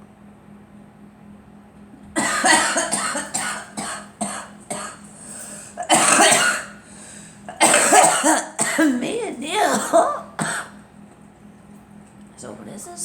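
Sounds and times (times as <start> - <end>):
girl coughing: 2.2 - 5.0, 5.7 - 6.8, 7.5 - 10.8.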